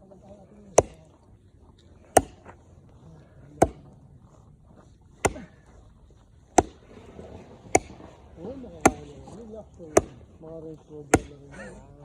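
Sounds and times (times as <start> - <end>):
axe chopping wood: 0.7 - 1.2, 2.0 - 2.6, 3.5 - 4.0, 5.2 - 5.6, 6.5 - 11.6.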